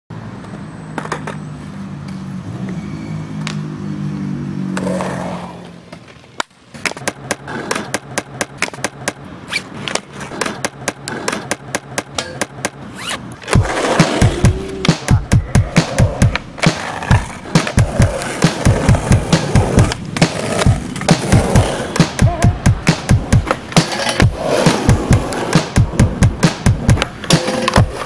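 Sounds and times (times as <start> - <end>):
skateboard wheels rolling on concrete: 0.1 - 28.0
skateboard clacks and wheel impacts: 0.4 - 1.8, 4.7 - 28.0
skateboard scrape: 4.7 - 8.0, 9.4 - 11.5, 12.8 - 14.9, 15.7 - 22.1, 23.5 - 25.8, 27.0 - 28.0.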